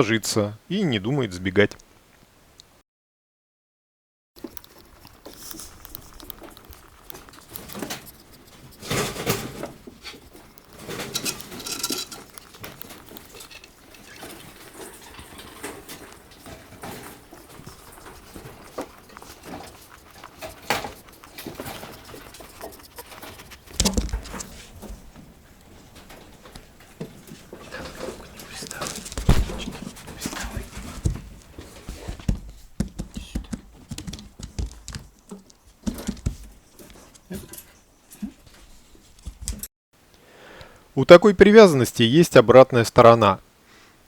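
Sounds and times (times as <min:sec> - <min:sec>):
rabbit teeth clicking and grinding: 0:04.4 - 0:38.6
rustling: 0:04.4 - 0:39.7
heavy thump: 0:29.2 - 0:30.1.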